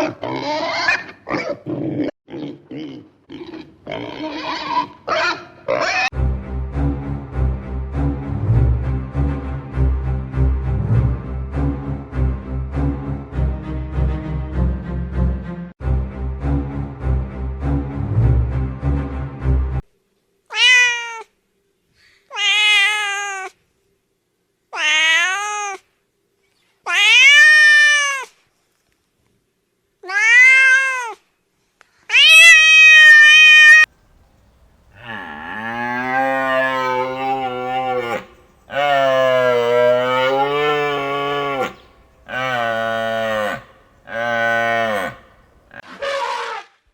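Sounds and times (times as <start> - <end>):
cat meowing: 20.5 - 21.3, 22.3 - 23.6, 24.8 - 25.8, 26.9 - 28.3, 30.0 - 31.2, 32.1 - 33.9
cow mooing: 35.0 - 45.8.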